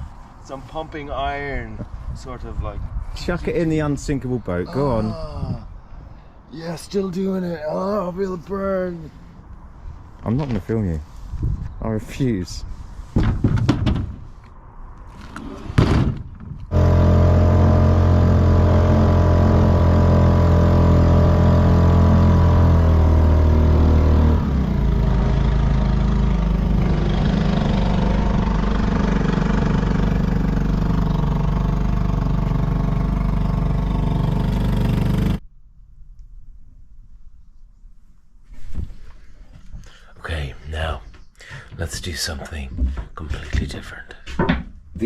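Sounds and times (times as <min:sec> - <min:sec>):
knocks: 0:13.2 - 0:14.2, 0:44.3 - 0:44.8
boat engine running: 0:16.7 - 0:35.4.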